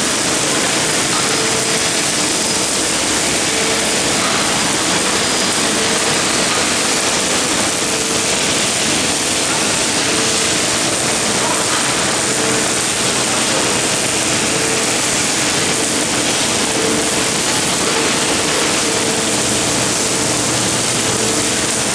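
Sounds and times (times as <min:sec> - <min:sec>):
welding arc hissing: 0:00.0 - 0:21.9.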